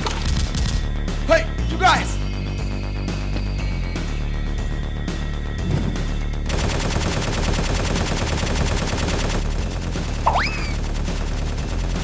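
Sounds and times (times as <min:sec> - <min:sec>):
machine-gun fire: 0:06.5 - 0:12.0.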